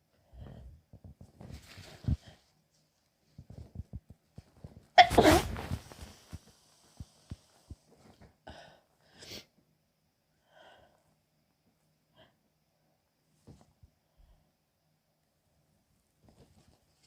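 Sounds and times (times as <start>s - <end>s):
woman sneezing: 5.0s - 5.6s.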